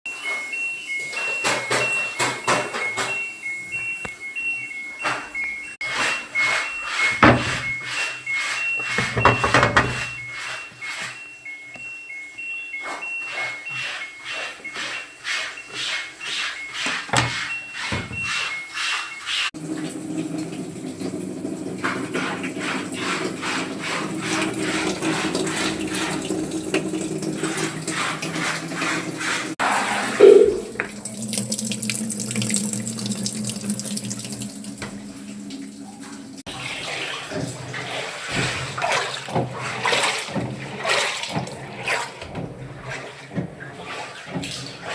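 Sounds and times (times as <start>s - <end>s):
washing machine filling with water: 0.1s - 18.9s, 19.5s - 44.9s
water splashing into drum: 36.5s - 44.9s.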